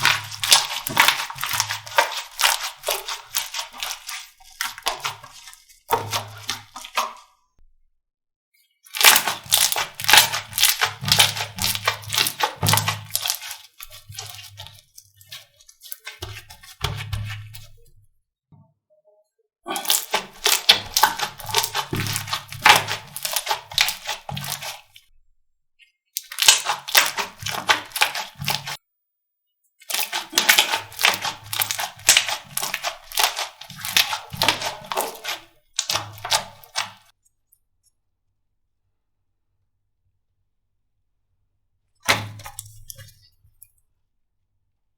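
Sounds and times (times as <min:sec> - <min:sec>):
slime crackling and popping: 0:08.9 - 0:14.5, 0:19.8 - 0:25.0, 0:26.2 - 0:28.8, 0:29.9 - 0:37.0.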